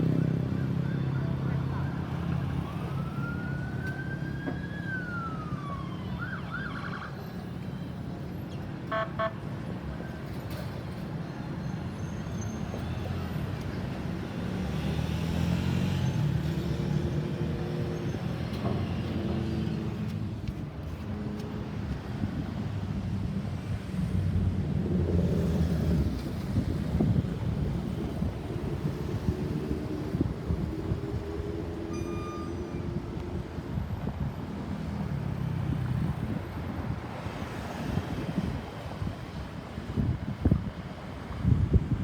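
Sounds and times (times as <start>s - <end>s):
road traffic rumble: 0.0s - 42.0s
emergency vehicle siren: 0.1s - 8.2s.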